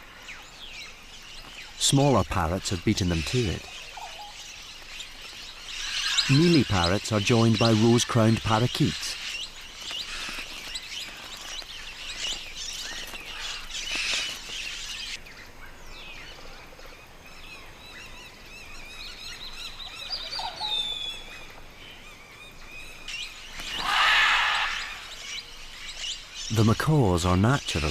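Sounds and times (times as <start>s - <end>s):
parrots calling and chattering: 1.8s - 15.2s, 23.2s - 27.9s.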